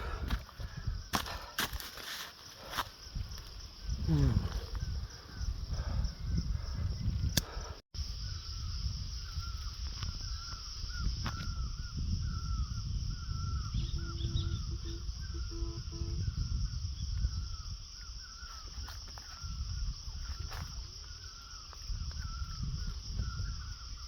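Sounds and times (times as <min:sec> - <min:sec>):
high insect-like drone: 0:08.0 - 0:24.0.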